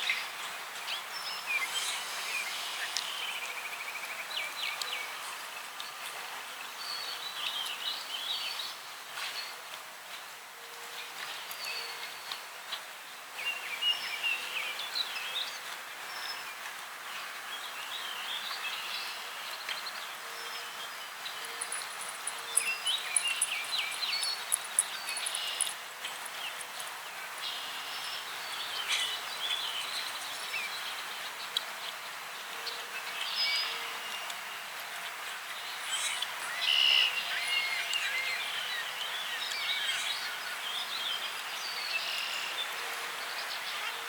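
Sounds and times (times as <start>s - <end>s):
small birds chirping: 0.0s - 6.0s, 17.8s - 32.2s
outdoor hiss: 0.0s - 44.0s.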